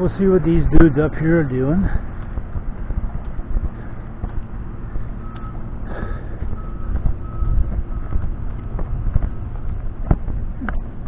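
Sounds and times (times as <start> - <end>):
low engine rumble: 0.0 - 11.0
backup alarm beeping: 4.6 - 9.8.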